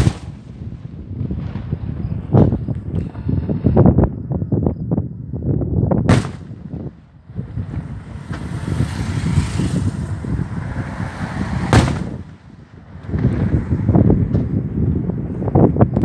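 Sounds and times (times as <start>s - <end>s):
fireworks bangs: 0.0s - 4.0s, 6.1s - 15.4s
fireworks hissing crackle: 0.0s - 4.0s, 6.1s - 15.3s
low rumble: 6.1s - 15.2s.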